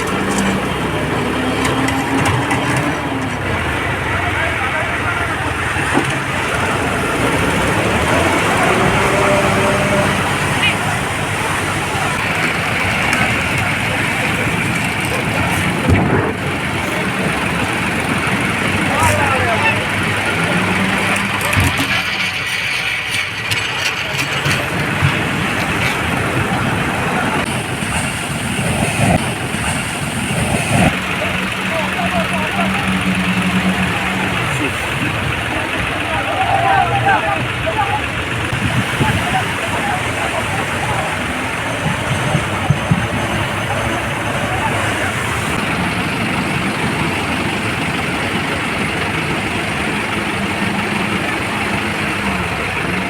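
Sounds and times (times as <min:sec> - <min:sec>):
outboard engine running: 0:00.0 - 0:53.0
surf rushing: 0:00.0 - 0:53.0
wind: 0:00.0 - 0:53.0
wind noise: 0:23.9 - 0:31.0, 0:38.4 - 0:49.2.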